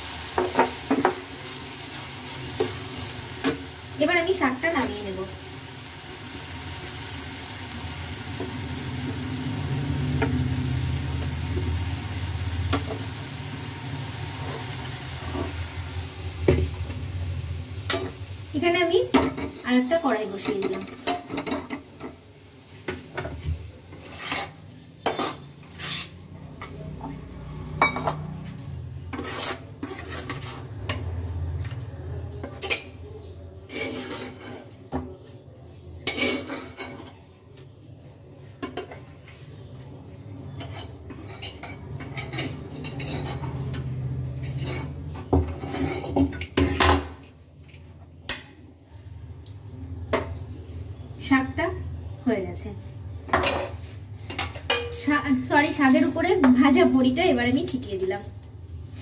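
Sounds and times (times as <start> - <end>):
metal utensils clinking on pots: 17.8 - 22.2, 22.9 - 27.2, 27.8 - 28.4, 32.3 - 35.2, 36.0 - 37.2, 40.5 - 47.3, 53.3 - 59.0.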